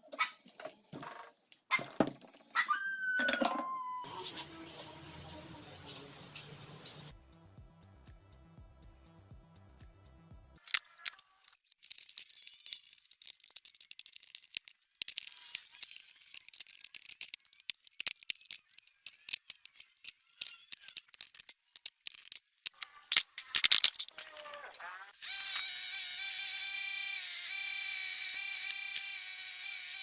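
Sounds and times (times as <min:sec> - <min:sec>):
small hard objects clicking and rattling: 0:10.6 - 0:25.2.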